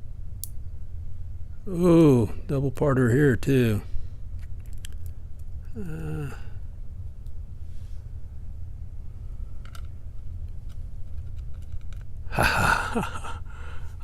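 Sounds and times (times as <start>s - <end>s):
low hum: 0.0s - 14.0s
small clicks of lock parts: 4.4s - 5.5s, 9.6s - 12.1s
person sighing: 5.6s - 6.7s, 12.3s - 14.0s.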